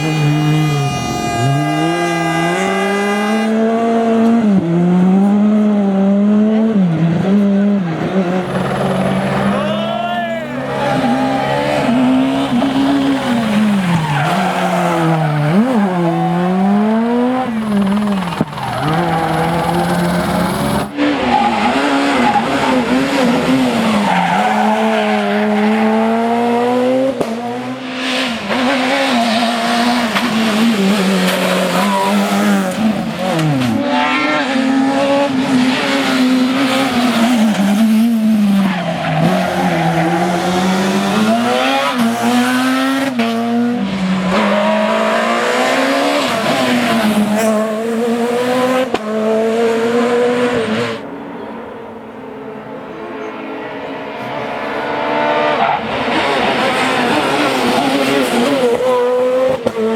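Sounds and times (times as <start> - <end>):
rally car engines revving hard: 0.0 - 59.9.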